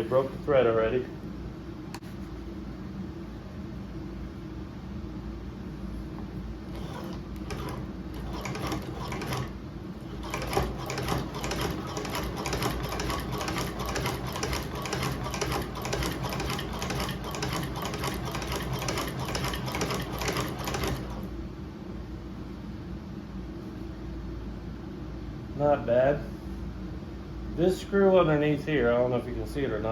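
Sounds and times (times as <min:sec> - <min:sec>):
sewing machine clicking: 0:06.7 - 0:21.3.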